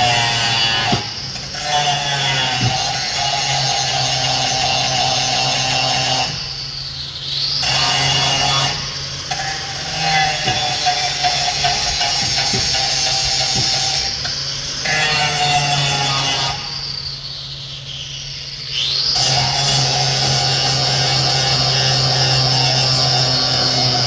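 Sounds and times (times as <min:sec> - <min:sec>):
power tool running: 0:00.0 - 0:24.0
knocks: 0:00.8 - 0:01.4, 0:02.2 - 0:03.3, 0:09.8 - 0:14.4.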